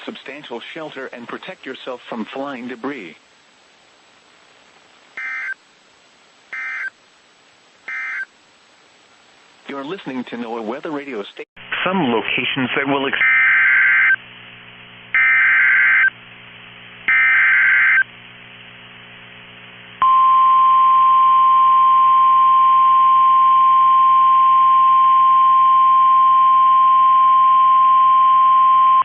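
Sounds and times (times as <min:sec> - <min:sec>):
data bursts on radio: 0:05.2 - 0:05.6, 0:06.5 - 0:07.0, 0:07.9 - 0:08.3, 0:15.2 - 0:16.1, 0:17.1 - 0:18.1.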